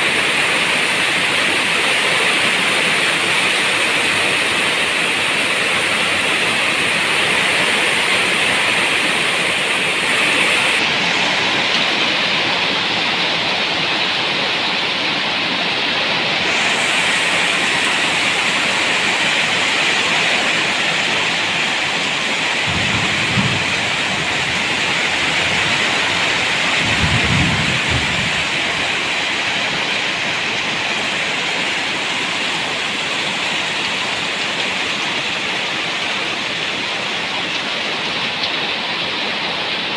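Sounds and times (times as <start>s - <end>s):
steady rain: 0.0s - 39.9s
low thunder rumbles: 22.5s - 29.0s.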